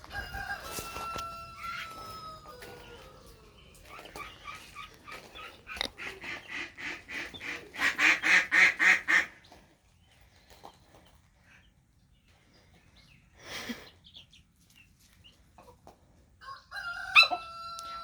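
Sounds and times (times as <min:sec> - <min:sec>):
poultry harsh repeated calls: 0:03.8 - 0:09.6.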